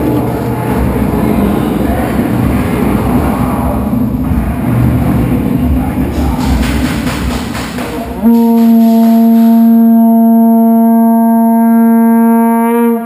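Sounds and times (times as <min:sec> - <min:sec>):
noisy clatter: 0:00.0 - 0:10.9
horn blast: 0:08.1 - 0:13.0.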